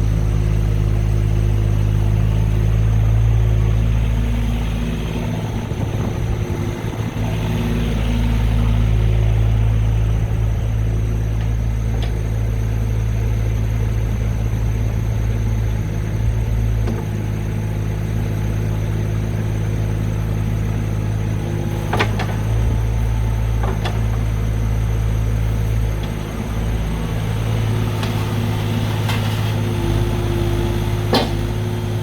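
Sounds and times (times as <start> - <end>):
diesel engine running: 0.0 - 32.0.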